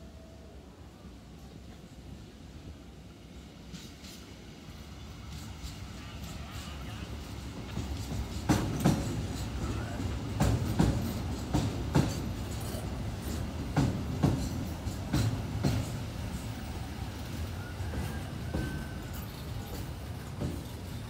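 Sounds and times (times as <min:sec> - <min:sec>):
train rumbling past: 0:00.0 - 0:21.0
wheels clacking over rail joints: 0:05.2 - 0:21.0.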